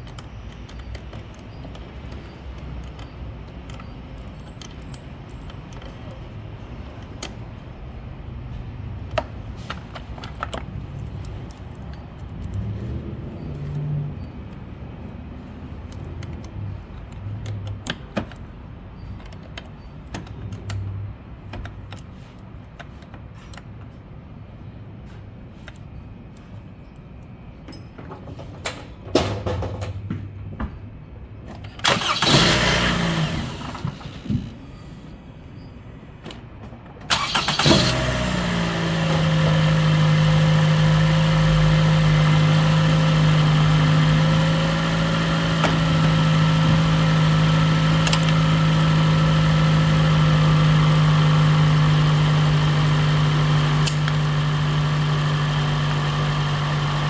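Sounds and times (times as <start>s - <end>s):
car engine starting and idling: 31.7s - 34.8s, 37.1s - 57.0s.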